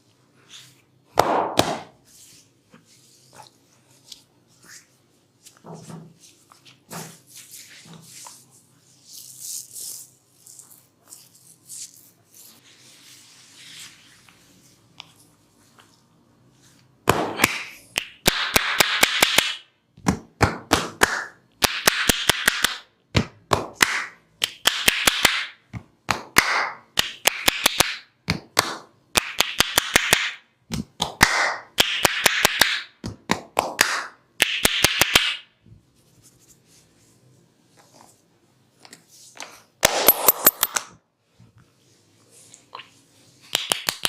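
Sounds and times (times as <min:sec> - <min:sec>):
hands rubbing on skin: 0:06.2 - 0:16.0
hands slapping skin: 0:17.1 - 0:35.4, 0:43.4 - 0:44.0.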